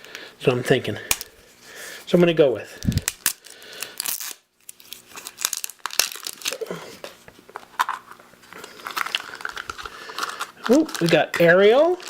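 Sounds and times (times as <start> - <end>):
wrapping torn and crumpled: 2.7 - 12.0.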